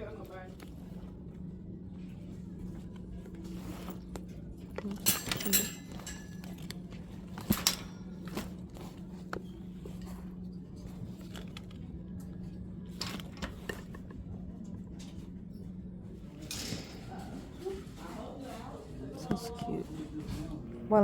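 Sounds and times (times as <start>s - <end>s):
steady low store hum: 0.0s - 21.0s
metallic clinks of purse hardware: 4.9s - 6.6s.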